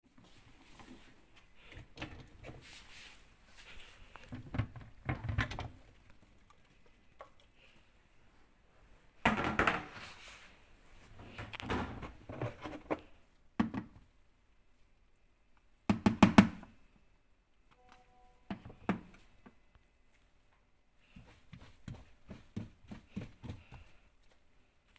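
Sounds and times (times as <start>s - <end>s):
clunks and rattles of handled objects: 0.5s - 2.6s, 4.1s - 7.5s.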